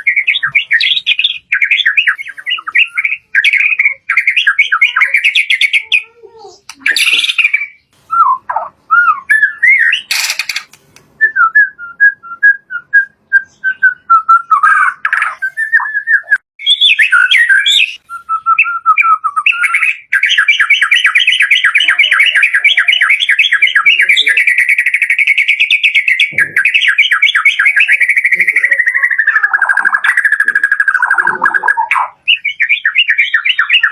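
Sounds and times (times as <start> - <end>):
bird whistling song: 0.0 - 33.9
bird fast trill: 9.3 - 10.7, 19.4 - 33.9.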